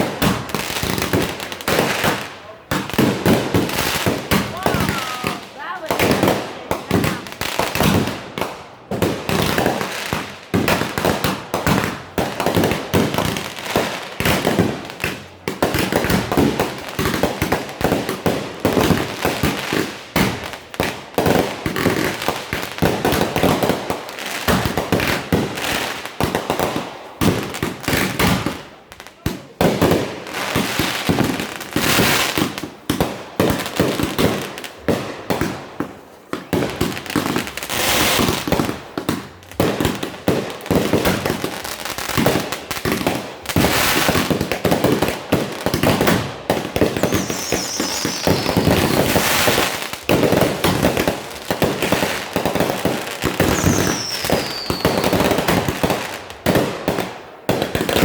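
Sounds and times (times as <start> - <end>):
fireworks bangs and crackling: 0.0 - 58.0
high falling firework whistles: 46.9 - 49.6, 53.4 - 55.2.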